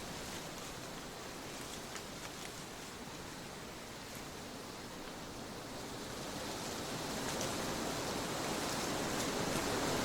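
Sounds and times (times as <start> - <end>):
faint rustles: 0.0 - 4.4
wind blowing: 0.0 - 10.0.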